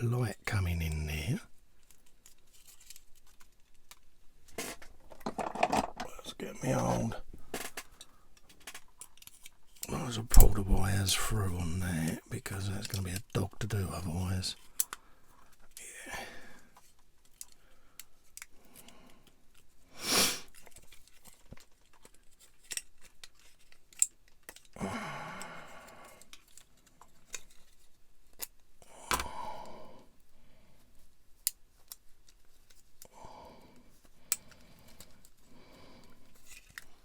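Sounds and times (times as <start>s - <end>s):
plastic parts clicking: 1.8s - 6.1s, 7.5s - 10.5s, 14.6s - 15.0s, 20.5s - 24.8s, 26.1s - 29.4s, 34.0s - 35.4s
wires scraping and rustling: 26.1s - 28.5s, 34.0s - 37.0s.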